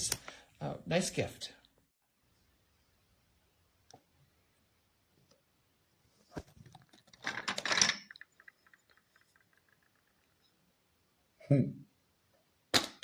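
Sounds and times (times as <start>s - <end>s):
crinkling and clattering plastic: 6.4s - 9.8s.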